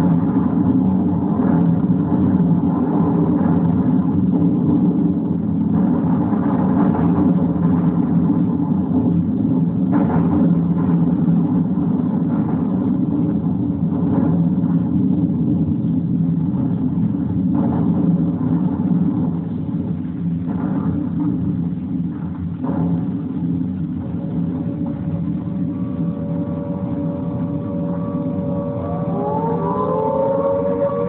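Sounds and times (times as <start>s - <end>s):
piston aircraft engines droning: 23.1s - 31.0s.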